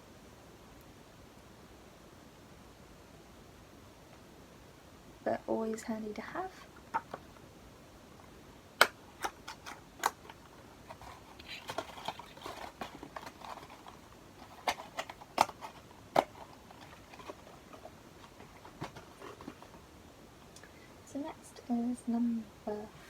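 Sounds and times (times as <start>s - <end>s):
soft packaging rustling: 8.8s - 19.9s.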